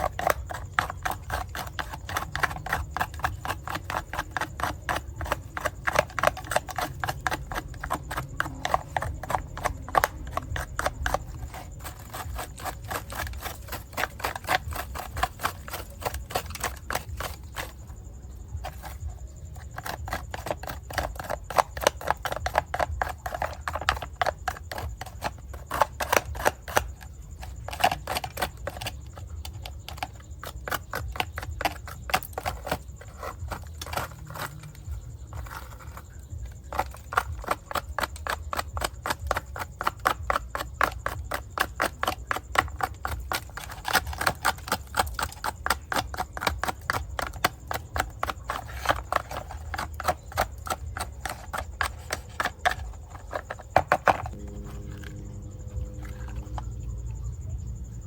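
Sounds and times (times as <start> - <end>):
low steady hum: 49.0 - 58.0.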